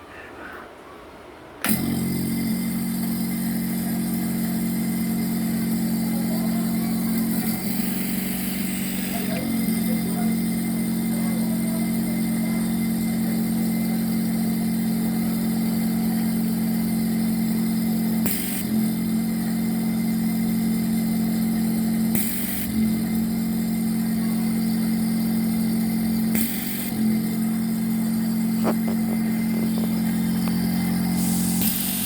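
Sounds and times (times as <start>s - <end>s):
vacuum pump humming: 1.6s - 32.0s.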